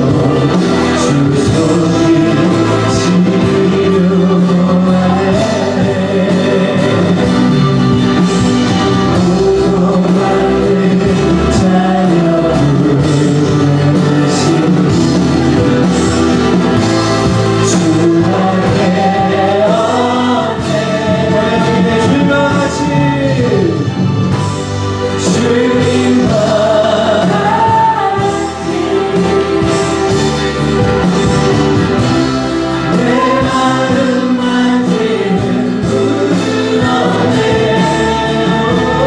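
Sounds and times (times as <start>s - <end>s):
worship song singing with band: 0.0s - 39.0s.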